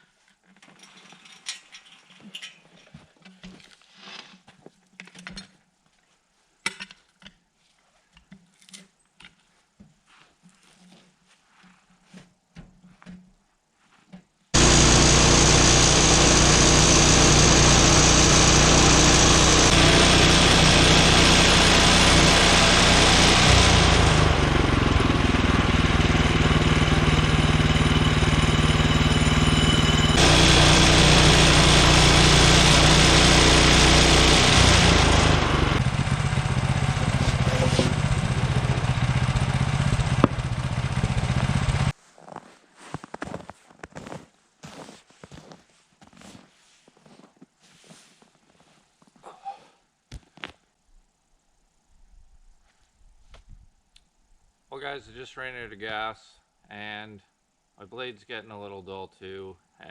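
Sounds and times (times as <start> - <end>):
bandsaw sawmill running: 14.6 - 41.9.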